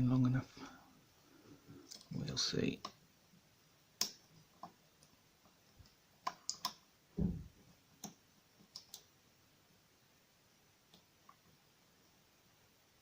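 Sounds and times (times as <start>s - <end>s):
dull knock: 7.2s - 7.5s.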